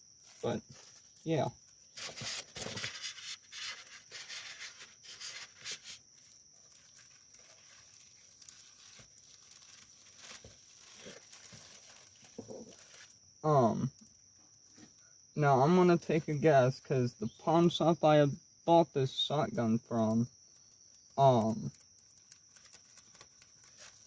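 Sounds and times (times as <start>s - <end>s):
crickets chirring: 0.0s - 24.0s
handling noises: 0.2s - 13.2s
packaging rustling and tearing: 0.2s - 13.2s, 21.7s - 24.0s.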